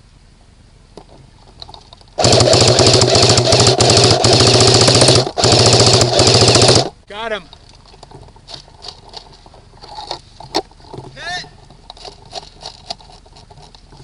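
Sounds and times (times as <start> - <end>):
airsoft gun firing full auto: 2.2 - 6.9.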